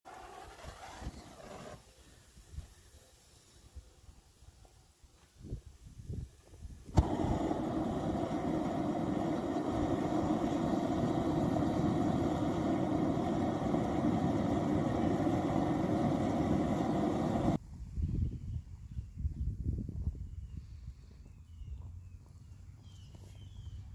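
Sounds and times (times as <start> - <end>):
furnace burner roaring: 6.9 - 17.6.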